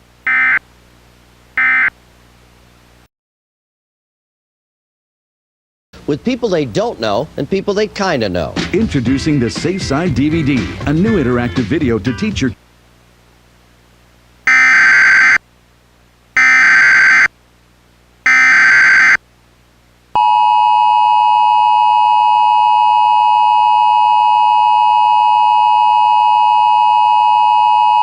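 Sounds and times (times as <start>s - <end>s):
screeching data tones: 14.5s - 15.4s, 16.4s - 17.3s, 18.3s - 19.2s.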